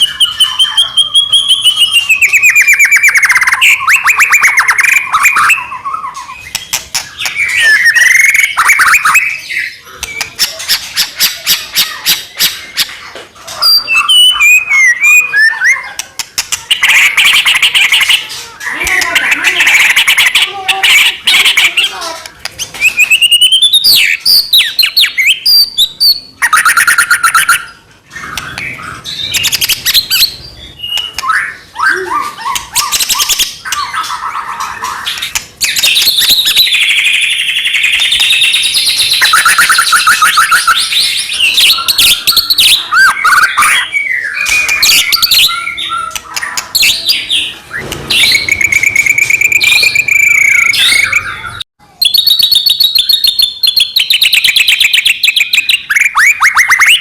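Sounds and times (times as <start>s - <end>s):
songbird singing trills and whistles: 0.0s - 57.0s.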